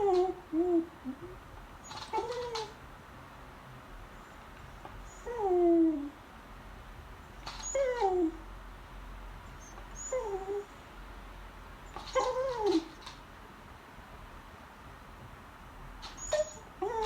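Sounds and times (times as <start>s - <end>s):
dog whining: 0.0s - 2.8s, 5.1s - 6.1s, 7.5s - 8.4s, 9.6s - 10.7s, 12.0s - 13.0s, 16.0s - 17.0s.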